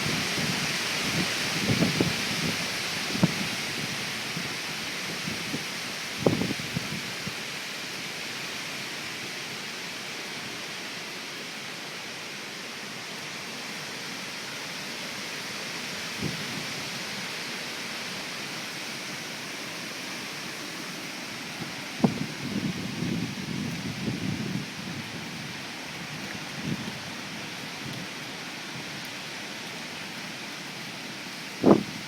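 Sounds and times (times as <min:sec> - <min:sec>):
wind gusts buffeting microphone: 0:00.0 - 0:03.9, 0:05.1 - 0:07.2, 0:21.6 - 0:27.2, 0:31.6 - 0:32.0
heavy rain pouring: 0:00.0 - 0:32.0.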